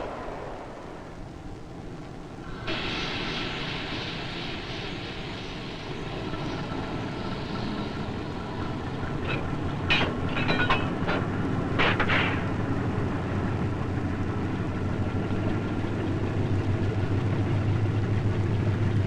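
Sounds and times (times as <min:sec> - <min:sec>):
high hiss: 0:00.0 - 0:11.6
train rumbling by: 0:00.0 - 0:19.0
sharp clanks from train wheels: 0:02.5 - 0:14.6.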